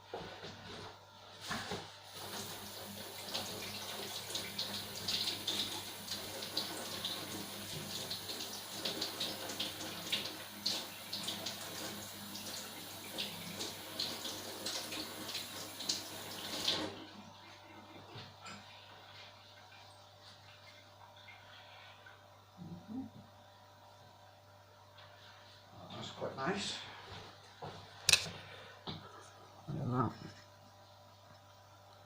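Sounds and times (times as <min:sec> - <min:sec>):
tap water running and splashing: 0:00.1 - 0:17.1, 0:18.1 - 0:22.2.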